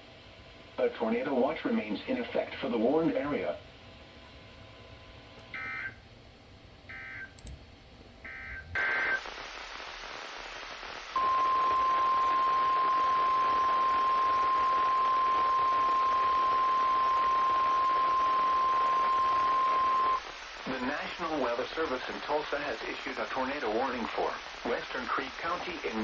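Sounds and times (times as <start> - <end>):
radio static hiss: 8.3 - 26.0.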